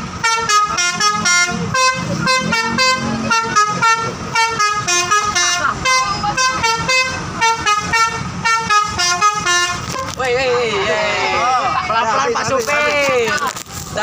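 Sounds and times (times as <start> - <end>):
bus musical air horn toots: 0.0 - 10.2.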